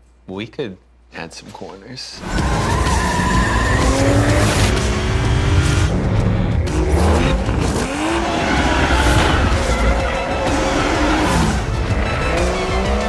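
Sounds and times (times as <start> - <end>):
tyres squealing: 2.2 - 4.3
car engine revving: 2.2 - 13.0.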